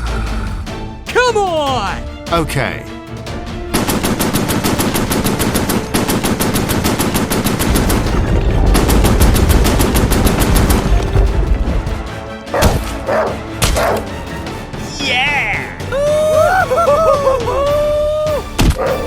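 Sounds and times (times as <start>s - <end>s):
machine-gun fire: 3.7s - 11.8s
deep rumble: 7.6s - 12.9s.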